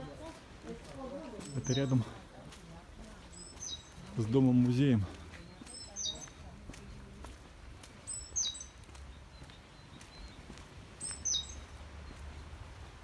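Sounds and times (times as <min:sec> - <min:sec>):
small bird calling: 0:03.3 - 0:04.0, 0:08.1 - 0:11.8.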